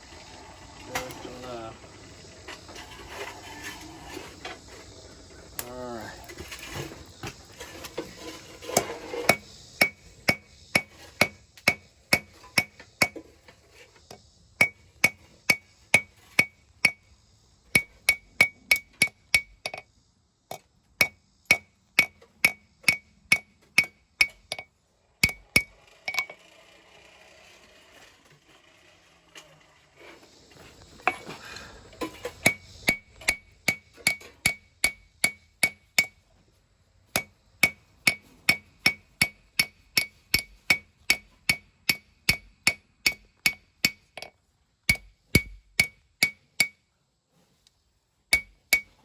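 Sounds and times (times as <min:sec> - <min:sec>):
hammer striking steel on anvil: 0:09.2 - 0:13.3, 0:14.6 - 0:17.0, 0:17.8 - 0:19.8, 0:21.0 - 0:26.3, 0:32.0 - 0:36.2, 0:37.1 - 0:44.3, 0:44.9 - 0:46.9, 0:48.3 - 0:49.0.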